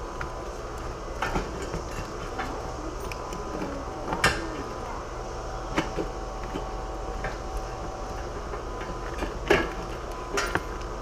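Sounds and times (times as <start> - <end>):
steady background hum: 0.0 - 11.0.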